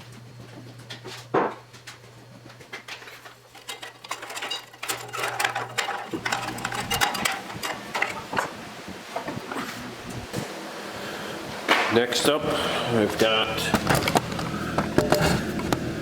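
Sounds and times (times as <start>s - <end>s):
steady low hum: 0.0s - 16.0s
metal tools clinking on case: 3.5s - 8.5s.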